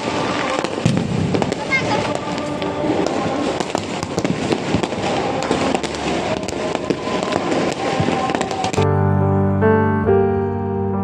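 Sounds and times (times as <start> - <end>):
firecrackers banging: 0.0 - 8.8
piano music: 5.2 - 11.0.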